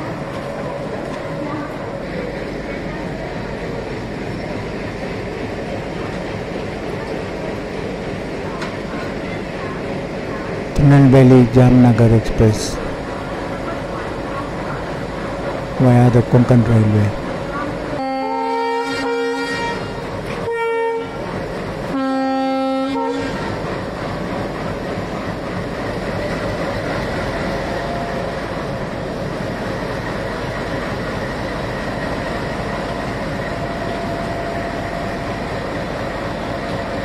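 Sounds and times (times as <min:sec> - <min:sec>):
train engine running: 0:00.0 - 0:37.0
locomotive horn blasts: 0:18.0 - 0:21.3, 0:21.9 - 0:23.6.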